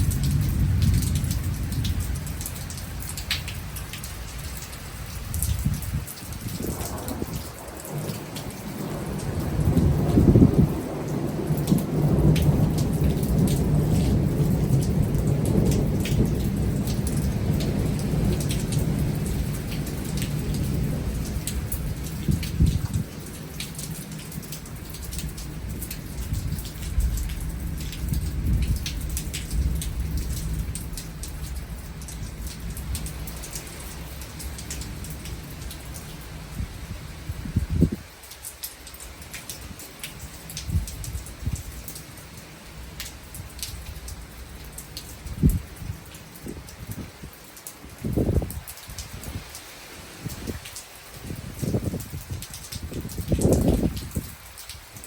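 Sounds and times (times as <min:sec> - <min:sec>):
raindrops ticking: 0:00.0 - 0:36.6, 0:37.2 - 0:55.0
thunder rumbling: 0:00.0 - 0:38.1
heavy rain: 0:00.0 - 0:55.0.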